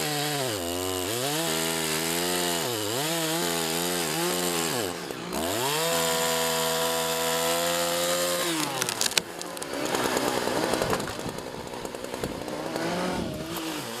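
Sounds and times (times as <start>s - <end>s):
chainsaw engine revving: 0.0s - 14.0s
tree cracking: 7.3s - 13.8s
rough unpitched noise: 8.4s - 13.7s.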